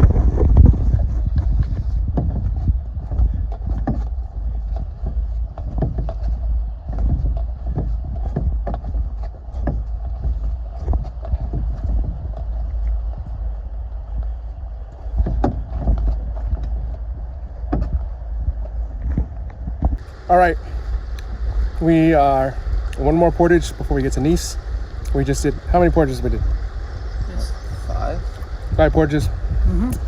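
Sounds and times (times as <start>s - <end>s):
paddle knocking against hull: 0.0s - 12.5s, 15.1s - 17.0s, 17.6s - 20.0s
wind rumble on microphone: 0.0s - 30.0s.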